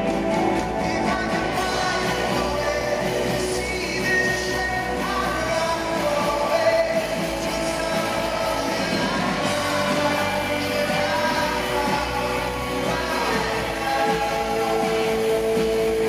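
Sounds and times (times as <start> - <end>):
live rock band: 0.0 - 16.0.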